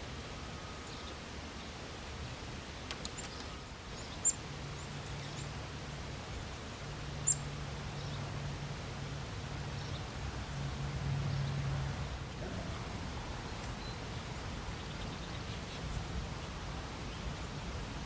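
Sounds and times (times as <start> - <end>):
outdoor background noise: 0.0 - 18.0
bird chirping: 3.1 - 5.5, 7.2 - 8.2.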